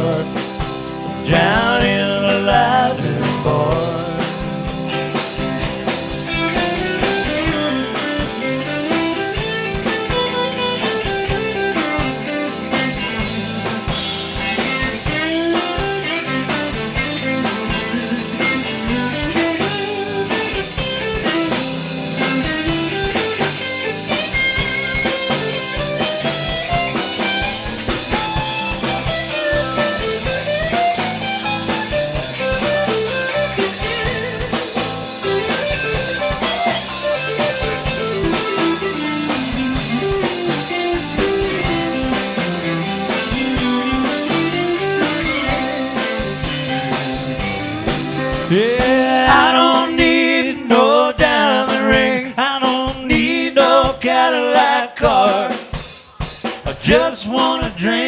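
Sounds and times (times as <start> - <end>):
lead guitar bending notes: 0.0 - 48.9
country blues band playing: 0.0 - 58.0.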